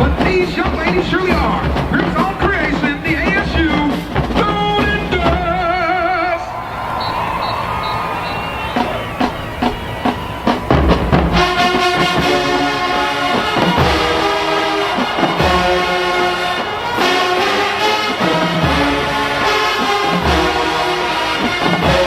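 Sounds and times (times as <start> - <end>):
brass playing held chords: 6.8 - 22.0.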